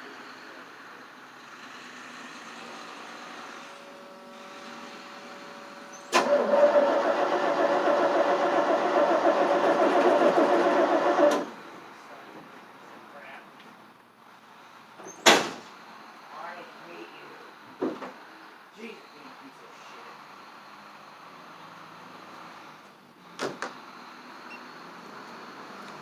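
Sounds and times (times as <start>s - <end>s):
engine cranking on starter: 6.0s - 11.6s.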